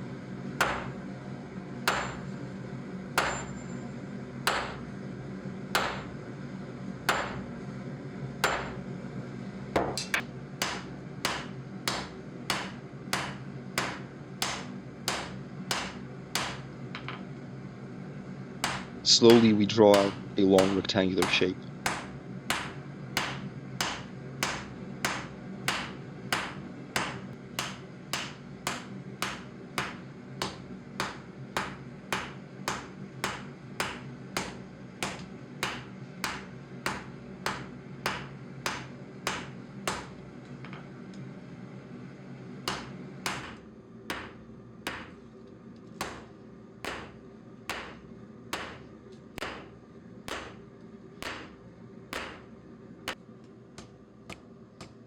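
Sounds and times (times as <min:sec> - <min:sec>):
steady low hum: 0:00.0 - 0:55.0
hammer striking hot steel: 0:00.6 - 0:01.1, 0:01.8 - 0:02.4, 0:03.2 - 0:04.9, 0:05.7 - 0:06.2, 0:07.0 - 0:07.5, 0:08.4 - 0:08.9, 0:09.8 - 0:17.3, 0:18.6 - 0:40.2, 0:42.7 - 0:45.2, 0:46.0 - 0:53.2.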